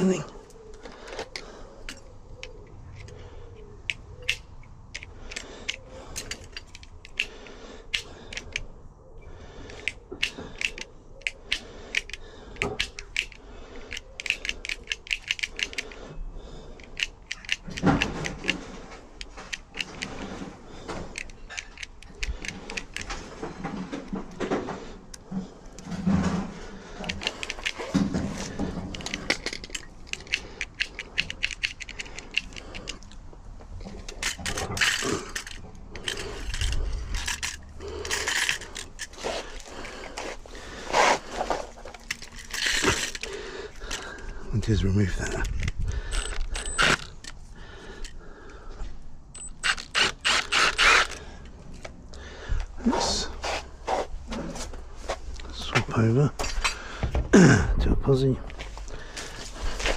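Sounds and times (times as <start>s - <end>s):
hand tools clicking on lock: 0.5s - 8.7s, 9.7s - 16.0s, 16.8s - 23.4s, 27.0s - 33.2s, 33.9s - 41.2s, 41.9s - 44.4s, 45.2s - 48.2s, 49.4s - 51.9s.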